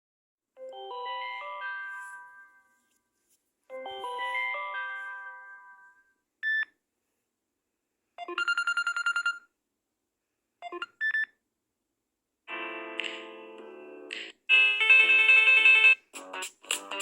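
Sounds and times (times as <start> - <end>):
ringtone melody: 0.6 - 2.9, 3.7 - 6.1, 12.5 - 17.0.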